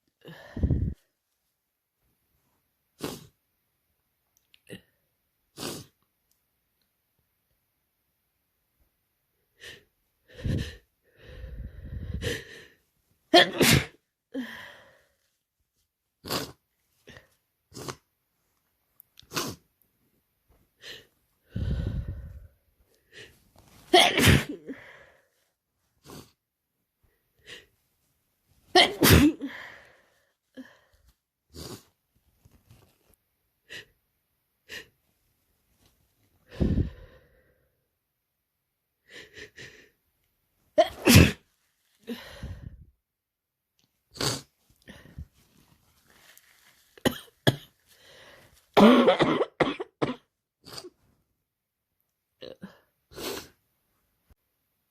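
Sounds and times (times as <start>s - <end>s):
breathy intakes of breath: 0.2s - 1.1s, 9.6s - 12.8s, 14.3s - 15.3s, 20.8s - 23.4s, 29.4s - 31.9s, 36.4s - 37.8s, 42.0s - 42.9s, 47.9s - 48.7s
person sneezing: 13.3s - 14.0s, 23.9s - 24.9s, 28.7s - 29.7s, 40.8s - 41.5s, 48.8s - 51.0s
hitching breaths: 20.8s - 23.4s.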